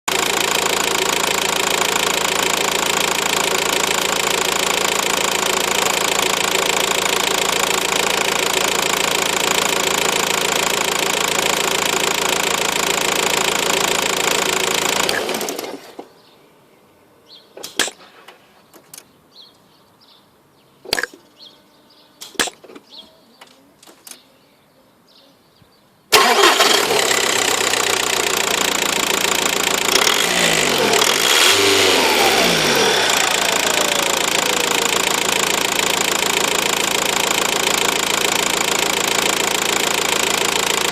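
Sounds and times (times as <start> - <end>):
car engine running: 0.1 - 15.8, 26.2 - 40.9
sharp clicks and knocks: 17.6 - 19.1
car engine starting: 26.1 - 40.9.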